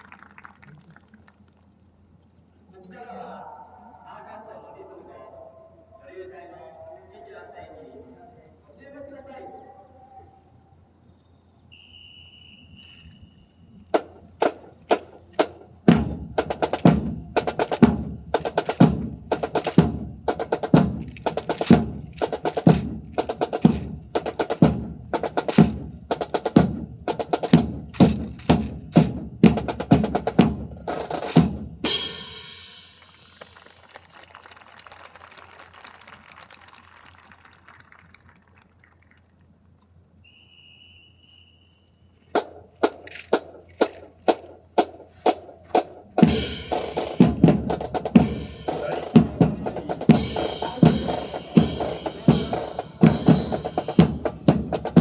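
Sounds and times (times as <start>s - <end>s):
applause: 0.0s - 1.7s, 32.7s - 39.8s
high whistle blast: 11.7s - 13.7s, 40.2s - 42.2s
rhythmic percussion strikes: 13.9s - 35.6s, 42.4s - 55.0s.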